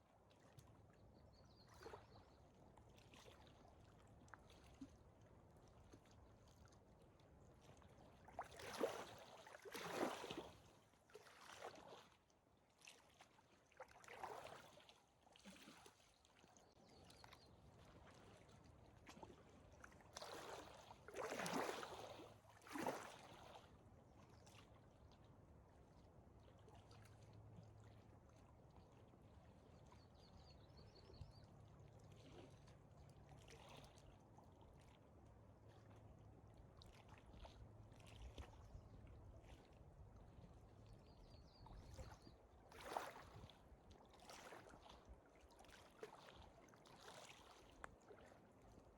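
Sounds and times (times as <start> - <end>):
small waves lapping: 7.7 - 23.8, 31.8 - 36.1, 36.7 - 40.7, 41.6 - 48.9.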